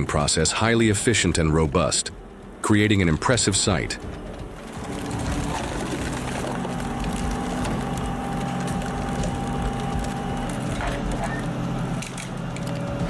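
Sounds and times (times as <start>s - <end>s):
different machine engine: 0.0s - 13.0s
log splitter engine running: 0.0s - 13.0s
wood cracking and splintering: 4.2s - 13.0s.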